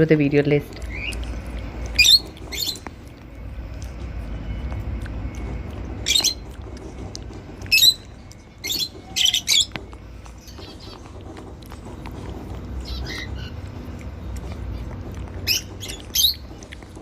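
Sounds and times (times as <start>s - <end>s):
low background rumble: 0.0s - 17.0s
parrot high-pitched calls: 1.9s - 2.9s, 6.0s - 6.5s, 7.7s - 9.8s, 12.8s - 13.6s, 15.4s - 16.6s.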